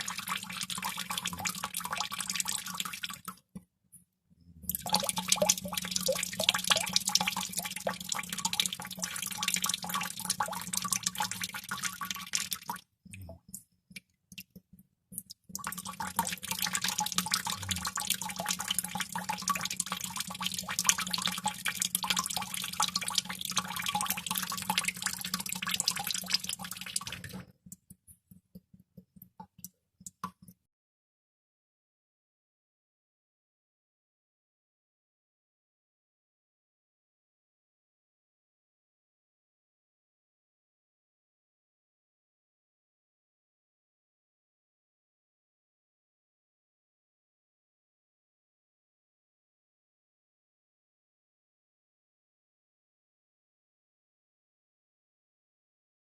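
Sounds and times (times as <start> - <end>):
water droplets dripping: 0.0 - 3.4, 4.7 - 14.6, 15.2 - 30.6.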